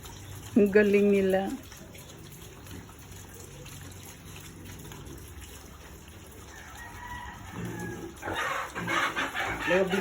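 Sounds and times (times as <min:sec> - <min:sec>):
rooster crowing: 0:06.5 - 0:08.0.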